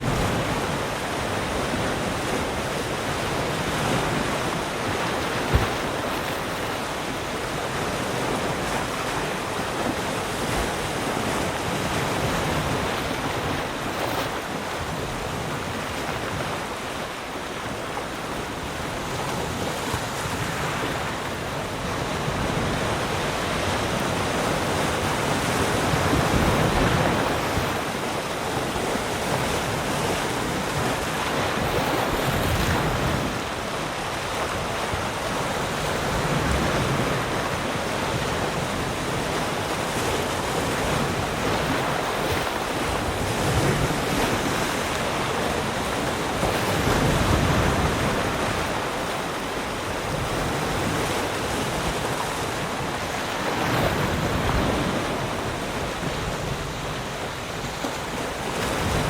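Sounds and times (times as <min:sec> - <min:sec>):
ocean waves breaking on shore: 0:00.0 - 0:59.0.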